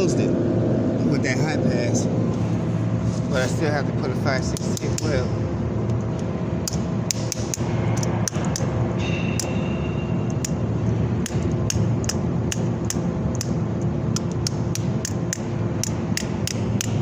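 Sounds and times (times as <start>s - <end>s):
welding hum: 0.0s - 17.0s
sharp metallic clicks: 4.4s - 5.3s, 5.9s - 8.7s, 10.3s - 10.6s, 11.2s - 17.0s.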